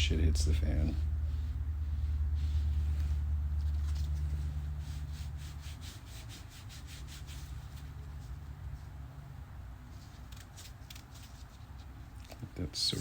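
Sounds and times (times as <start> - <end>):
low rumble: 0.0 - 5.6
hand rubbing leather: 0.5 - 13.0.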